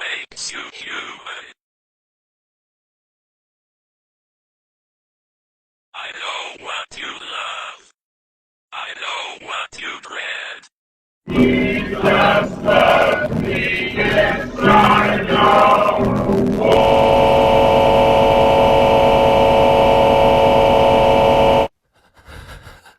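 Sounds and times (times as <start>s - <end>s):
loud choir-like music: 11.3s - 17.1s.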